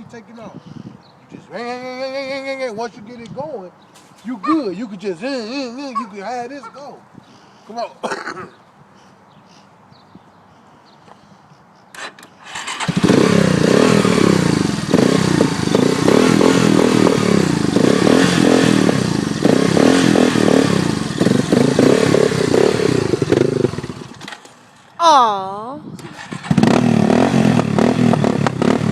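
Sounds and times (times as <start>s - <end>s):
atv engine revving: 12.0s - 24.4s, 26.0s - 28.9s.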